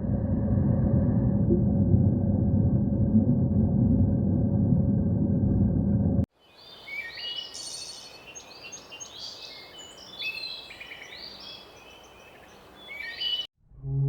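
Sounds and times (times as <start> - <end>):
small birds chirping: 6.4 - 13.5.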